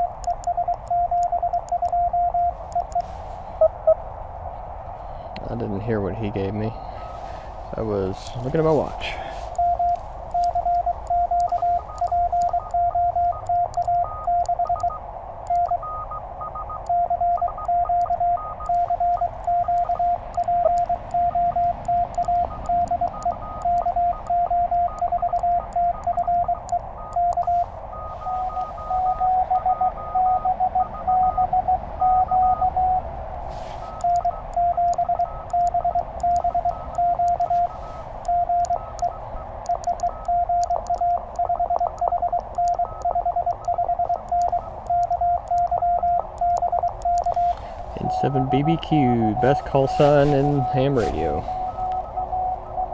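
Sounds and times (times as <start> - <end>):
morse code tone: 0.0 - 4.0, 5.4 - 52.9
higher pitched morse tone: 39.7 - 52.9.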